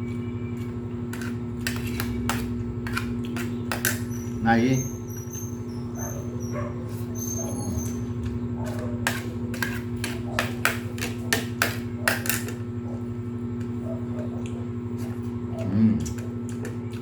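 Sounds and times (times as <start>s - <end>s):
steady low hum: 0.0s - 17.0s
clicks and taps from eating: 13.6s - 17.0s.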